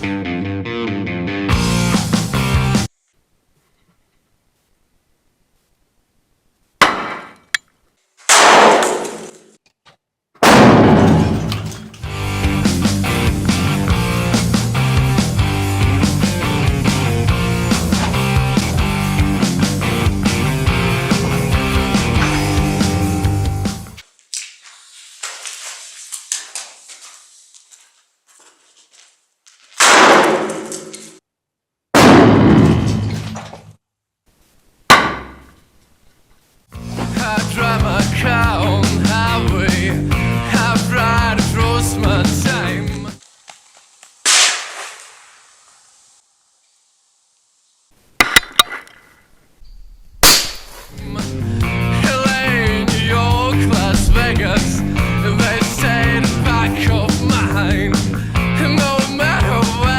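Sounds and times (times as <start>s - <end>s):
rock music: 0.0s - 2.9s, 11.4s - 24.0s, 36.8s - 43.2s, 50.9s - 59.9s
firecracker bangs: 8.3s - 9.4s, 10.4s - 11.8s, 29.8s - 31.0s, 32.0s - 33.1s, 44.2s - 45.5s, 50.2s - 50.8s, 53.8s - 56.6s
loud firecracker bangs: 10.4s - 11.7s, 29.8s - 30.9s, 32.0s - 33.1s, 44.3s - 45.4s.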